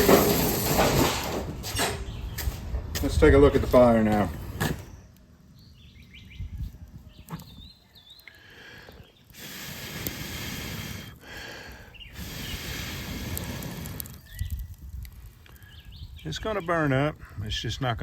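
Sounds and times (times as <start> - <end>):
wind on microphone: 1.8 - 4.9, 6.1 - 7.7, 12.0 - 17.6
bird chirping: 2.0 - 2.6, 4.6 - 9.4, 11.9 - 13.2, 14.0 - 14.8, 15.5 - 16.9.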